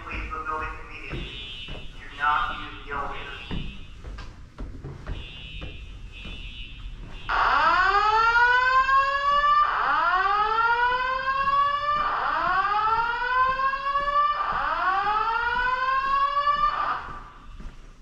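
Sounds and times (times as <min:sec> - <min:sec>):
fire alarm whoop tone: 0:05.2 - 0:17.4.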